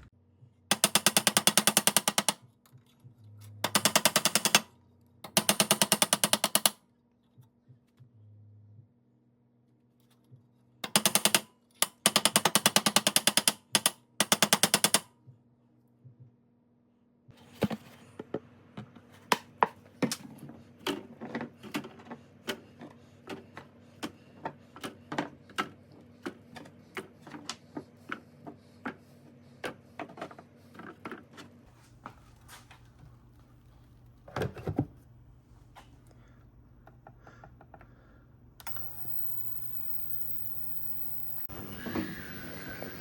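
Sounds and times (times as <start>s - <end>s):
faint steady hum: 31.8s - 43.0s.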